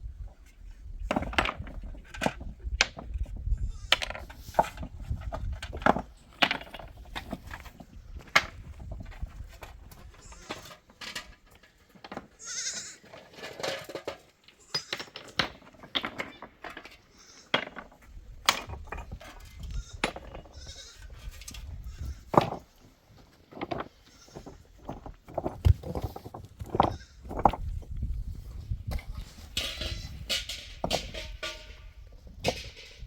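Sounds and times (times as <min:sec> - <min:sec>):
livestock bleating: 0:12.4 - 0:13.0.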